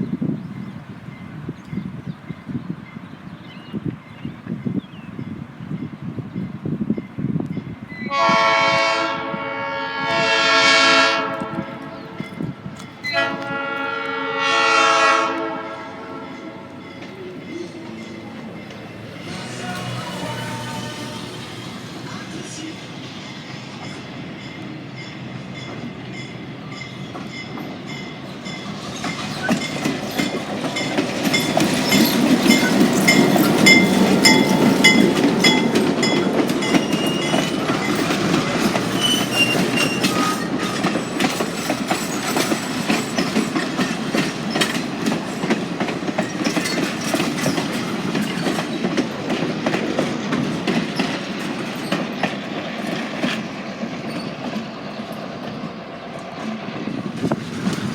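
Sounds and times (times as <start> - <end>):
train rumbling on rails: 0.0 - 57.9
wheel squeal: 38.8 - 43.6.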